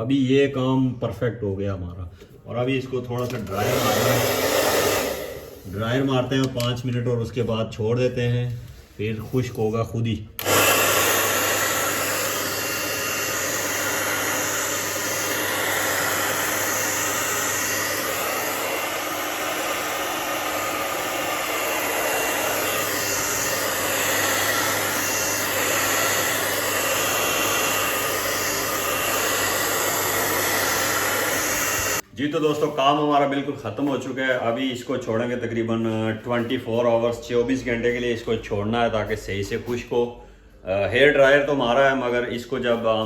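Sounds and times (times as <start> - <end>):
hair dryer blowing: 3.2 - 6.2, 10.4 - 32.0.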